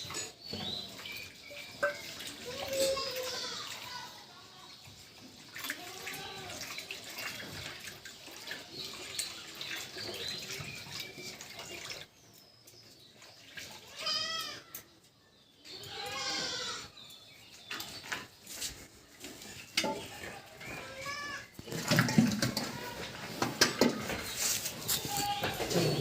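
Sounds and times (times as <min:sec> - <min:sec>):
farm animal bleating: 0:13.8 - 0:14.8, 0:15.7 - 0:17.0, 0:20.1 - 0:21.6, 0:24.9 - 0:26.0.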